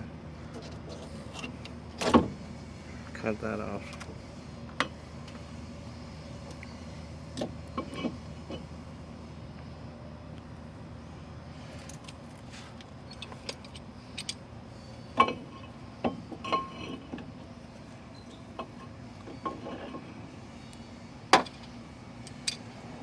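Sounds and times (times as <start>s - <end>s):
metal brake parts clinking: 7.3s - 8.7s, 11.8s - 22.8s.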